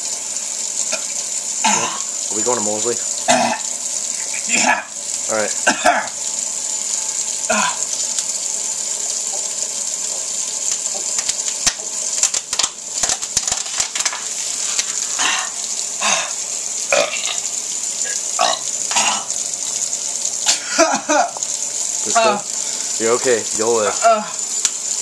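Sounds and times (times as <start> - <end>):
person gulping or burping: 0.9 - 2.1, 3.3 - 4.9, 5.6 - 6.2, 7.5 - 7.8, 15.2 - 17.4, 18.0 - 19.4, 20.4 - 21.4.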